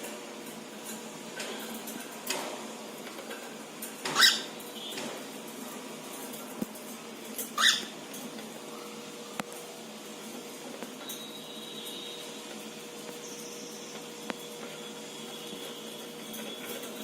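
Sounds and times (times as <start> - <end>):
cockatiel calling: 4.1 - 4.5, 7.6 - 7.9.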